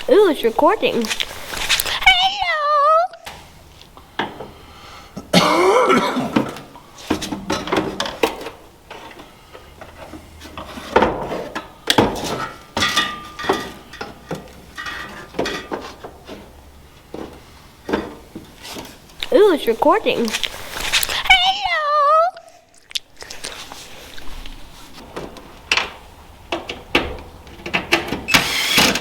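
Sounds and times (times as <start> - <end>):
metal tools clinking and clanking: 12.2 - 16.0.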